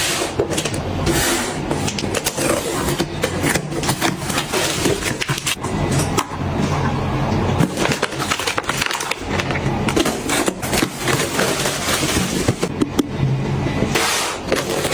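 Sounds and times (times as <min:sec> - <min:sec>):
household items clicking and knocking: 0:00.3 - 0:06.3, 0:07.6 - 0:13.1.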